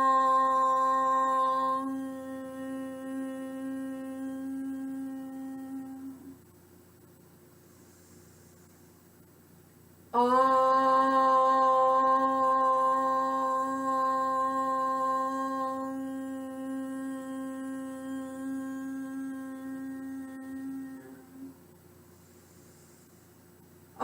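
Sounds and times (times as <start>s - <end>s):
person chanting om: 0.0s - 6.5s, 10.1s - 22.7s.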